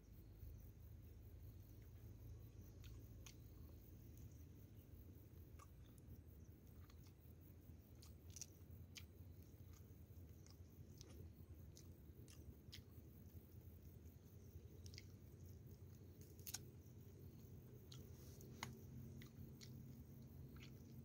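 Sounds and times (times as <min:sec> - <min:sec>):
low steady hum: 0:00.0 - 0:21.0
faint clicks and crunches: 0:07.8 - 0:12.9, 0:14.7 - 0:21.0.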